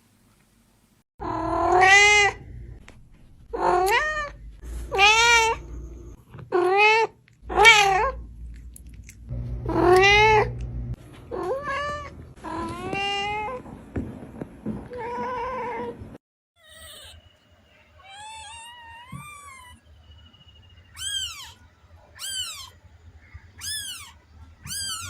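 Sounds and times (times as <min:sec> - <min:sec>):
cat meowing: 0:01.2 - 0:02.4, 0:03.6 - 0:05.7, 0:06.5 - 0:08.2, 0:09.7 - 0:10.5, 0:18.0 - 0:19.8, 0:21.0 - 0:22.8, 0:23.6 - 0:25.0.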